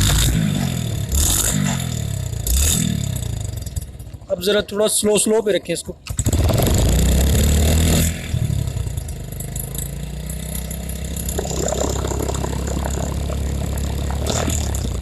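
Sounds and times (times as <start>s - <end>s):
motorcycle engine idling: 8.6s - 15.0s.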